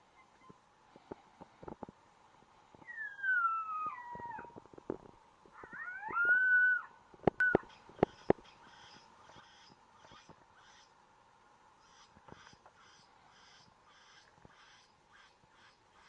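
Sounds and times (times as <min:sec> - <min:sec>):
coyote howls: 0:02.8 - 0:04.6, 0:05.5 - 0:07.7.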